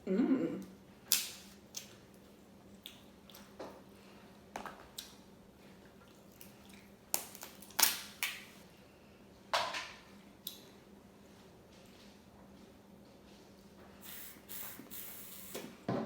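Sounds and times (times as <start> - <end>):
wet squishy eating: 1.1 - 3.7, 4.9 - 7.9.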